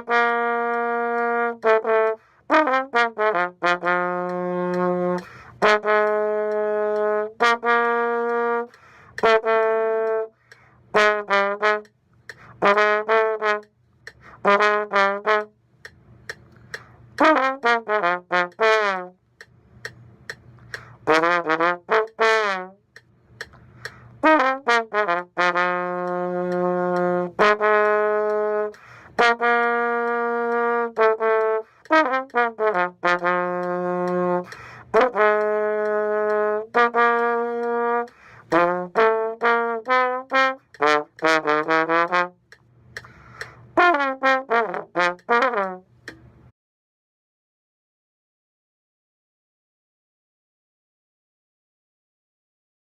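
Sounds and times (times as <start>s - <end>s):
brass instrument playing tune: 0.0s - 15.6s, 17.2s - 19.2s, 20.7s - 22.8s, 23.8s - 42.5s, 43.4s - 46.2s.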